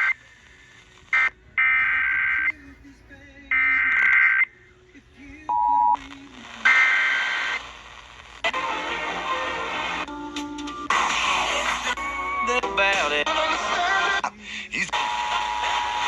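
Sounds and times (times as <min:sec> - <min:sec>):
digital warbling data bursts: 0:01.1 - 0:02.7.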